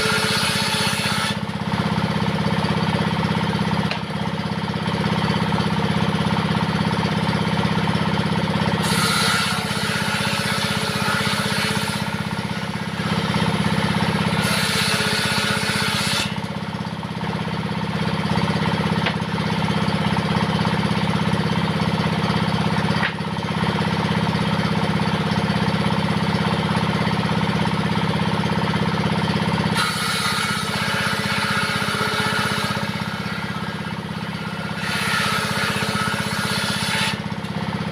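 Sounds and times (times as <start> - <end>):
saw blade cutting wood: 0.0 - 1.6, 3.8 - 4.1, 8.6 - 17.4, 29.6 - 37.7
diesel engine running: 1.4 - 8.8, 12.0 - 14.4, 16.3 - 29.8, 37.1 - 37.9.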